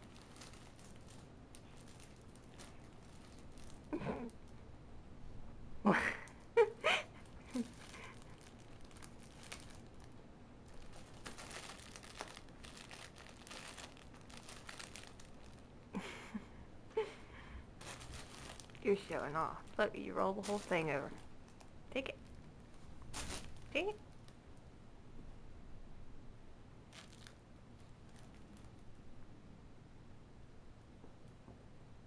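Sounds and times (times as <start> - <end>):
crinkling and rustling: 0.0 - 4.7, 7.0 - 16.0, 17.0 - 24.7, 26.9 - 29.1
faint room hum: 0.0 - 32.0.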